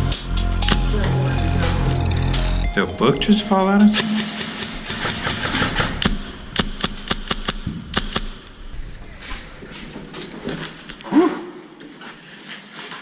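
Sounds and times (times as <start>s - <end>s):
airsoft gun shots: 4.9s - 8.5s.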